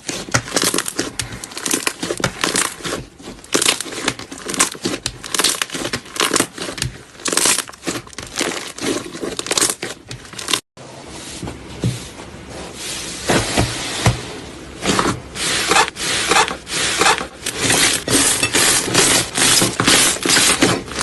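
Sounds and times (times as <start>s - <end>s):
slime crackling and crinkling: 0.0s - 10.7s.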